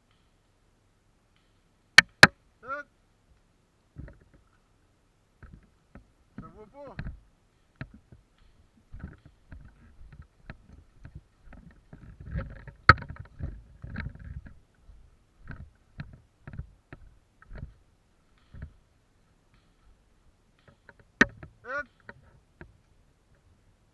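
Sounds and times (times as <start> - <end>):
footsteps: 5.4 - 18.9
rustling gear: 6.4 - 18.8.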